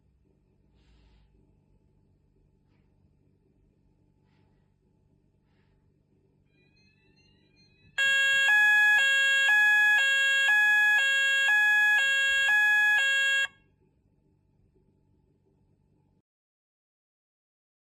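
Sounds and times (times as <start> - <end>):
two-tone electronic alarm: 7.0 - 13.6.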